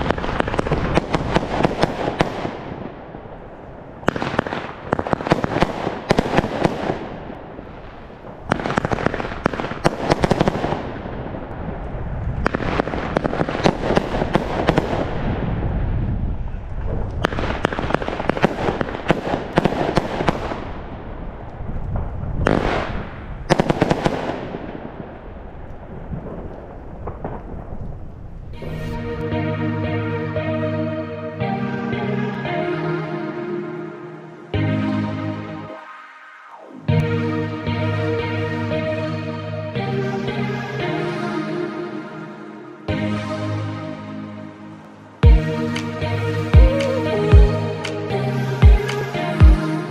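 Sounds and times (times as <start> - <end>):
fireworks bangs and crackling: 0.0 - 16.0, 16.8 - 28.7.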